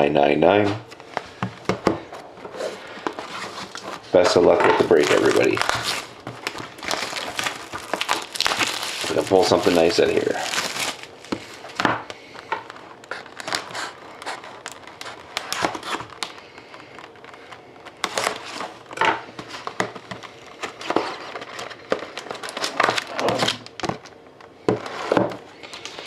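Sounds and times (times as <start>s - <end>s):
plastic wrapping crinkling: 0.9s - 24.2s, 24.8s - 26.0s
plastic tearing: 3.0s - 19.0s, 19.6s - 24.2s.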